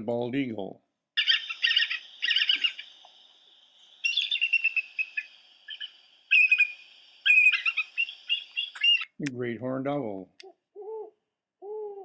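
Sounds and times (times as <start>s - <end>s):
eagle chittering calls: 1.2s - 9.2s.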